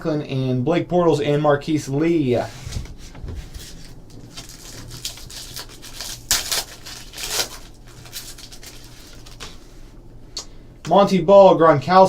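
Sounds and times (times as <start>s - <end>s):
foil wrapper tearing: 3.5s - 9.6s.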